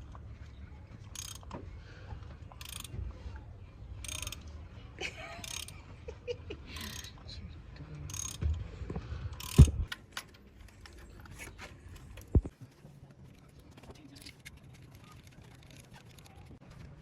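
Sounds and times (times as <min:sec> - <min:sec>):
metallic clicks and clinks: 0:04.0 - 0:04.5, 0:05.4 - 0:05.8.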